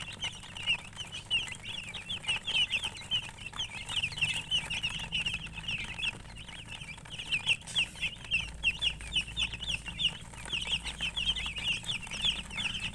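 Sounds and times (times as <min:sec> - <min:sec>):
chicks peeping: 0:00.0 - 0:12.9.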